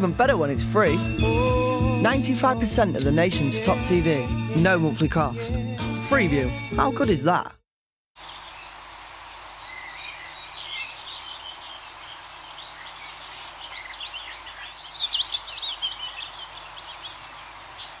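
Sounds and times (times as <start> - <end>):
background hiss: 8.2 - 18.0.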